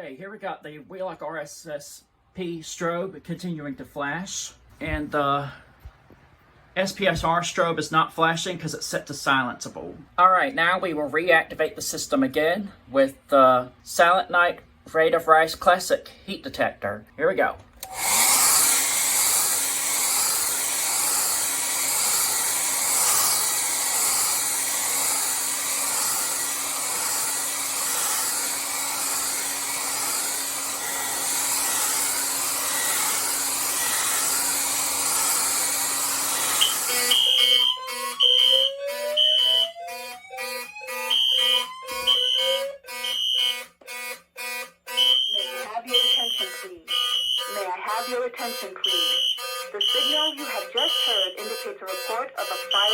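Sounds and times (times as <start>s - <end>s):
hair dryer blowing air: 17.8s - 37.1s
fire alarm whoop and beeps: 36.6s - 47.6s, 48.8s - 52.9s.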